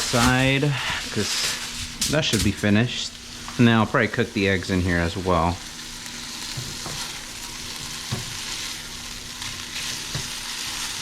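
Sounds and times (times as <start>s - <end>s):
meat and onions sizzling in a pan: 3.1s - 11.0s.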